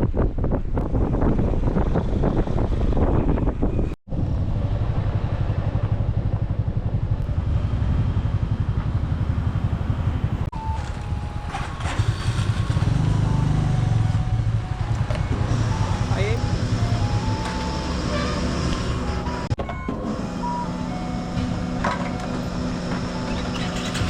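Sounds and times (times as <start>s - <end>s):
motorcycle engine running: 4.1s - 19.5s.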